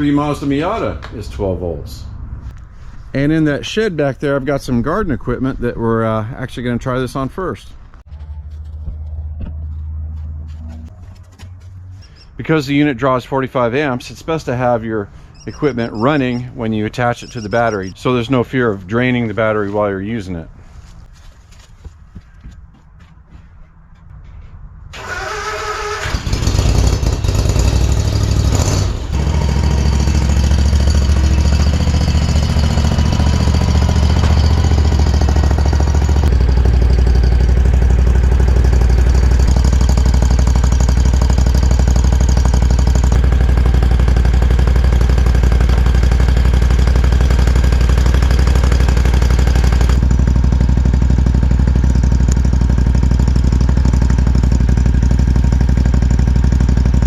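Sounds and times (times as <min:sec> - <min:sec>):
mower engine running: 0:25.0 - 0:57.0.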